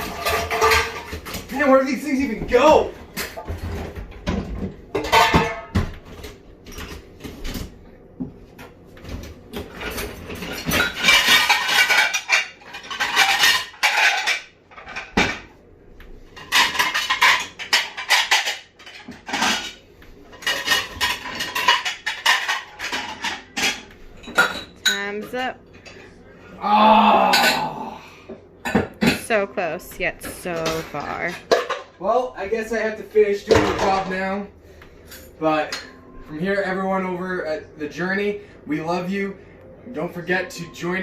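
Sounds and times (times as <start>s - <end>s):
dishes and cutlery clattering: 0.0s - 7.8s, 8.6s - 26.1s, 30.2s - 32.0s, 33.3s - 36.7s.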